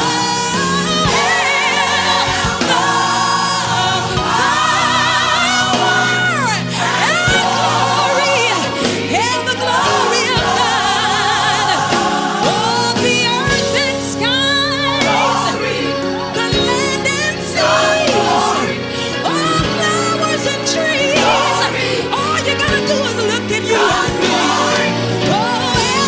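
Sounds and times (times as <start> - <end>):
gospel choir singing: 0.0 - 26.0
instrumental accompaniment: 0.0 - 26.0.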